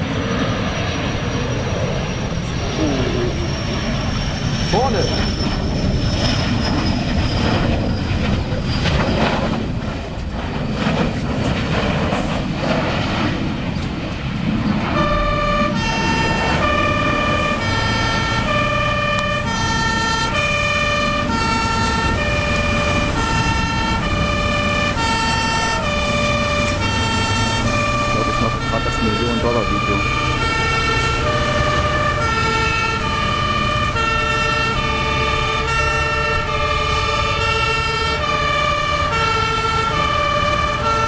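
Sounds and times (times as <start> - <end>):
two-tone emergency siren: 0.0 - 9.7, 14.7 - 41.0
low rumble: 0.0 - 37.4.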